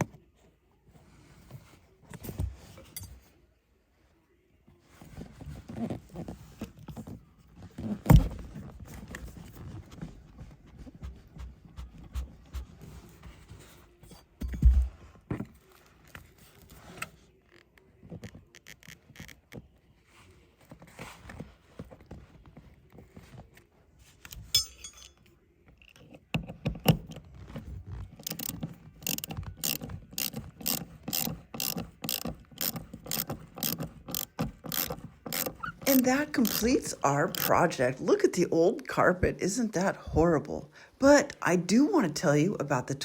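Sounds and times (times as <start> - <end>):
ratchet wrench clicking: 28.2 - 36.7, 37.3 - 37.5.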